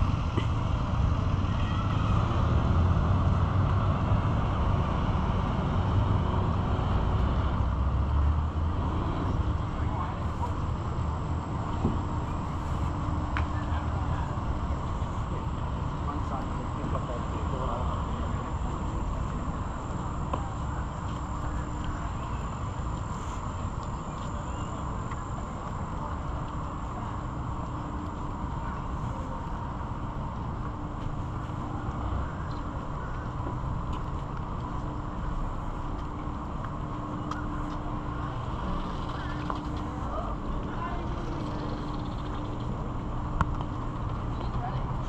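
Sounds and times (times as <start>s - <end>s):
street traffic: 0.0s - 45.0s
vehicle engine rumbling: 0.0s - 45.0s
insects trilling: 41.0s - 42.7s.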